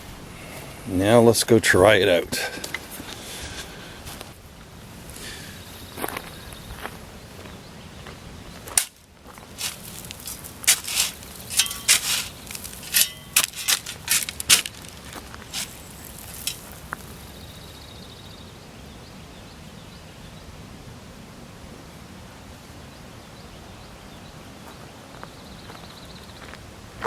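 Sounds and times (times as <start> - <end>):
faint outdoor background: 0.0 - 27.0
sharp crunches and clicks: 8.7 - 17.4.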